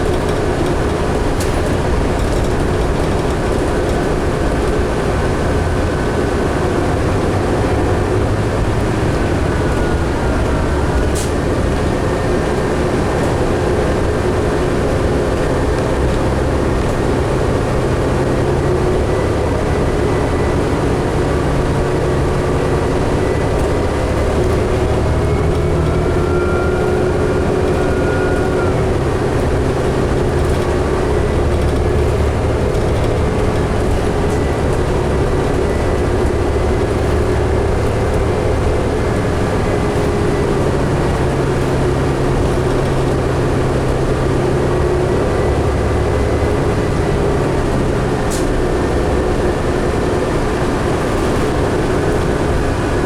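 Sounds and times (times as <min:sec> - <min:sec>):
bus engine rumble: 0:00.0 - 0:53.0
higher whine: 0:16.9 - 0:53.0.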